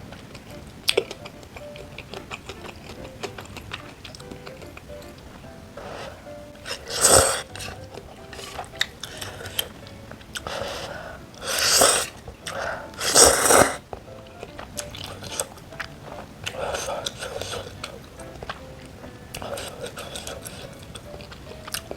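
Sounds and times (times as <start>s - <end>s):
faint background music: 0.0s - 21.9s
wet chewing clicks: 0.0s - 21.9s
noisy mouthfuls: 5.7s - 13.8s, 15.0s - 21.9s.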